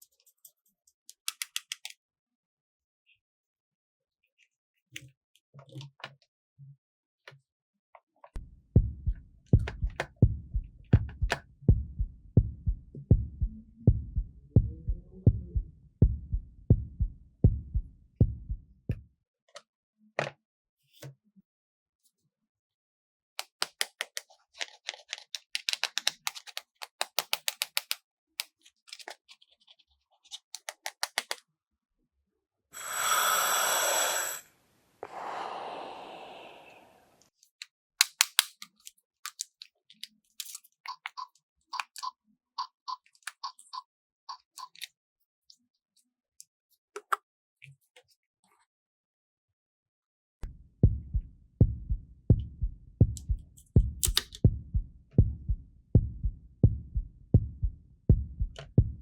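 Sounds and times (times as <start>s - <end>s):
plastic clicks and taps: 1.1s - 2.0s, 23.4s - 29.2s, 30.3s - 31.4s, 54.0s - 54.4s
toy heartbeat thumps: 8.8s - 19.0s, 50.8s - 59.0s.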